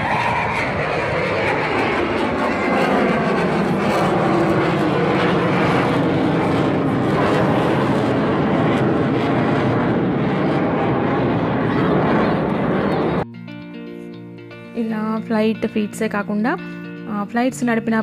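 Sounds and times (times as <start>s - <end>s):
jet aircraft roaring past: 0.0s - 13.3s.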